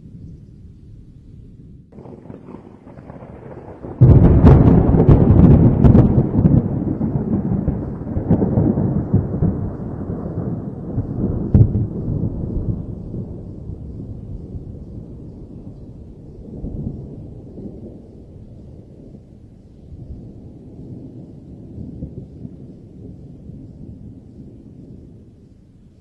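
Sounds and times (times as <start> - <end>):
rolling thunder rumble: 0.0 - 26.0
thunder crack: 1.9 - 18.4.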